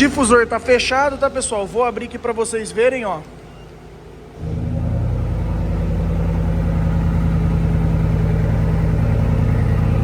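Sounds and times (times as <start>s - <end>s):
loud deep engine idling: 4.4s - 10.0s.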